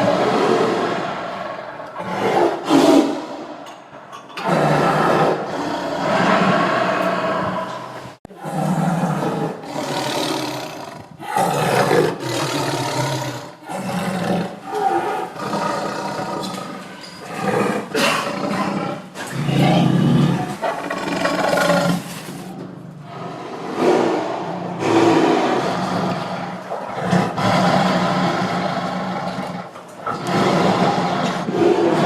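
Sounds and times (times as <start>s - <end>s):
tiger roaring and growling: 0.0s - 3.6s, 4.3s - 32.0s.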